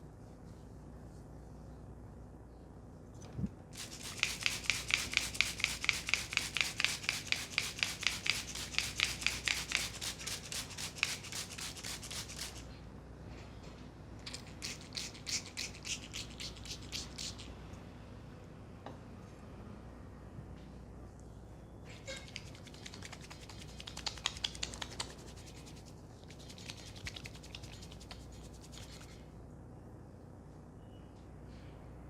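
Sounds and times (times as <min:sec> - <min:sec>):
hands rubbing hair and scalp: 0:03.8 - 0:12.6, 0:22.3 - 0:29.2.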